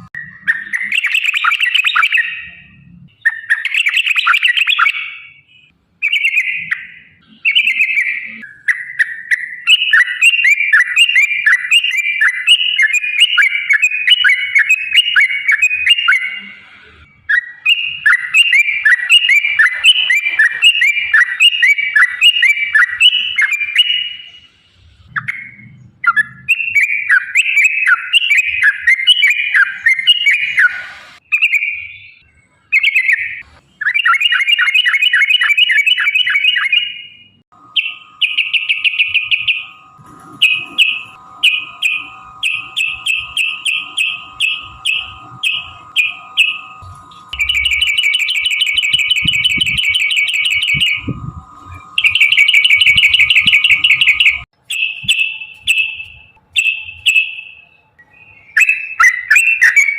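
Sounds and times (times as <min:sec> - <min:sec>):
bulbul singing chattering runs: 0:37.6 - 0:57.6.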